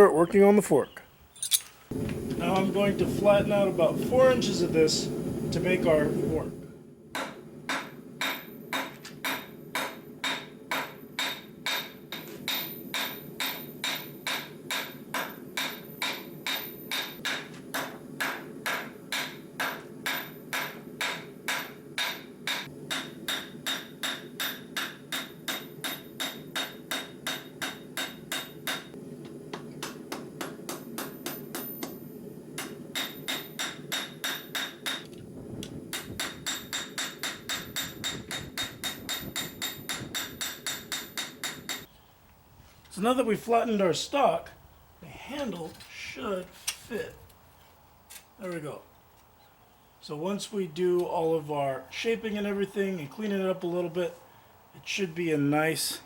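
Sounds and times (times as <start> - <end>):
hammer striking metal on anvil: 7.1 - 29.0, 29.6 - 32.0, 32.6 - 35.2, 35.9 - 41.9.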